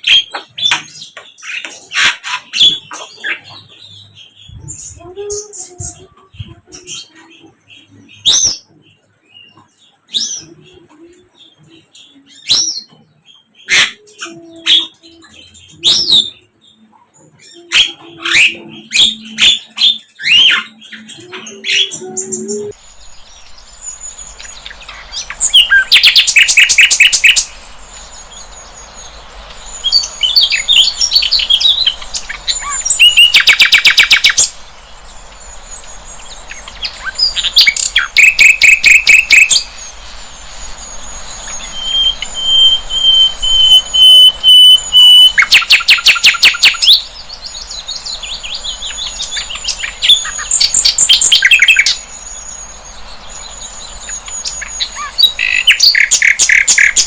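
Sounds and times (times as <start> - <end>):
bird singing trilled phrases: 0.0 - 57.0
soft bird twittering: 17.4 - 57.0
long bird whistle: 32.5 - 34.4, 40.4 - 47.1
high-pitched steady tone: 37.1 - 46.8.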